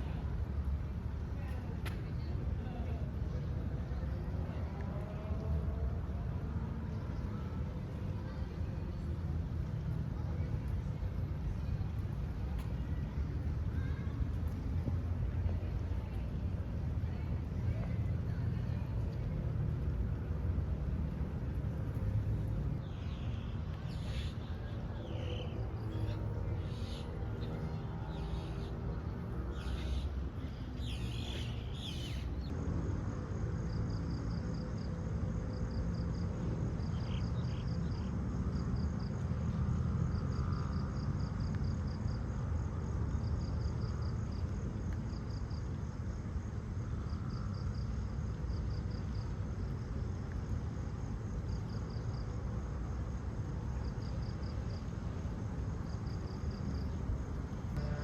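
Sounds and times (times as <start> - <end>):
insects chirping in trills: 22.8 - 58.0.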